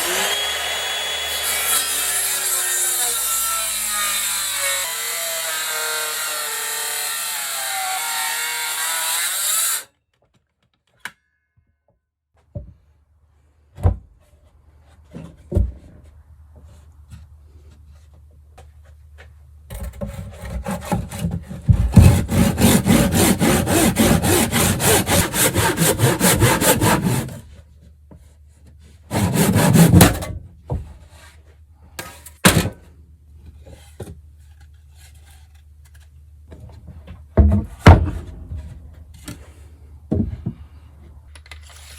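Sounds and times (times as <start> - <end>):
saw cutting through wood: 0.0 - 9.9, 21.9 - 27.4, 29.1 - 30.3.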